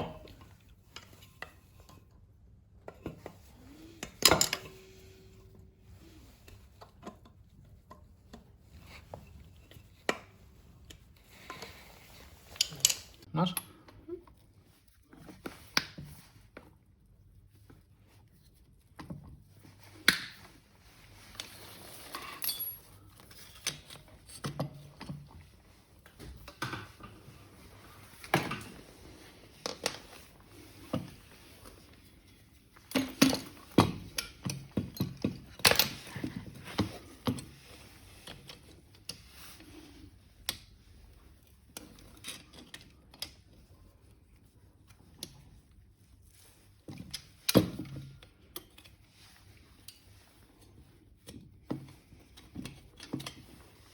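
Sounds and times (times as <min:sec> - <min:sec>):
tools and metal parts clinking: 0:02.9 - 0:05.5, 0:12.4 - 0:13.8, 0:21.4 - 0:25.3, 0:32.8 - 0:37.6.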